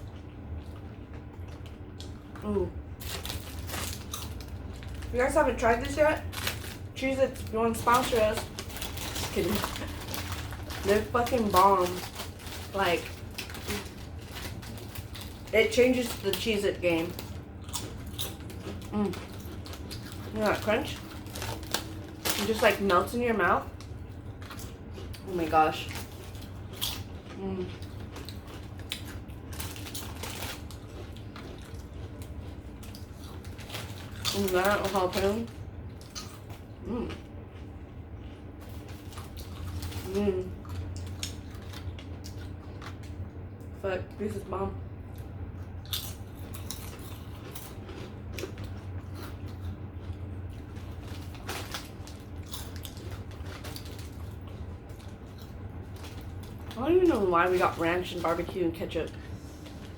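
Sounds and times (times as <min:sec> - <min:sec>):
chewing crunchy snacks: 0:00.0 - 0:43.8, 0:44.4 - 0:59.9
low steady hum: 0:00.0 - 0:59.9
wet chewing and lip-smacking: 0:17.1 - 0:22.4, 0:23.8 - 0:34.4, 0:45.1 - 0:56.8.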